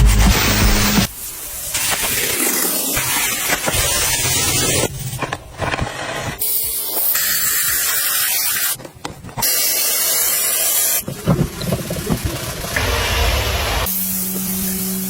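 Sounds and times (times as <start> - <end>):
pressure washer spraying water: 6.5 - 8.8, 9.4 - 11.0, 12.0 - 15.0.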